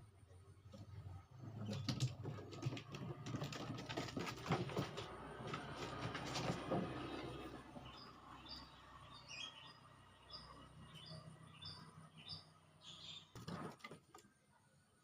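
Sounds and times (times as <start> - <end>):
small bird chirping: 7.8 - 13.6.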